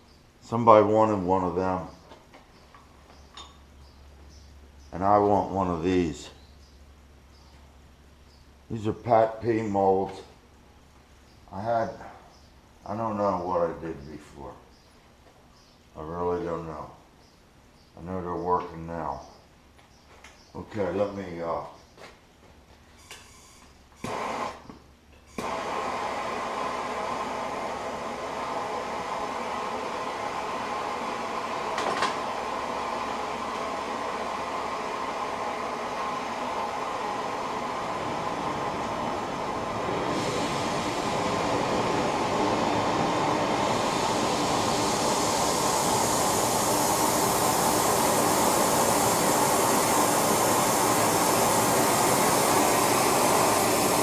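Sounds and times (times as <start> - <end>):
furnace running with rushing noise: 24.0 - 54.0.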